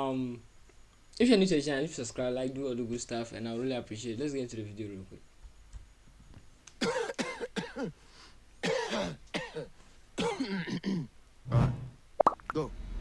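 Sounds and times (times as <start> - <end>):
person coughing: 6.8 - 7.9, 8.6 - 11.1
low thump: 11.5 - 12.0.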